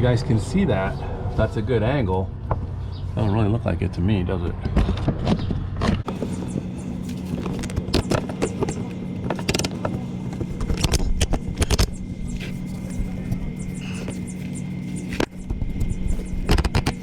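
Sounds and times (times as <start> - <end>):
steady mechanical hum: 0.0 - 17.0
handling clicks and scrapes: 4.9 - 17.0.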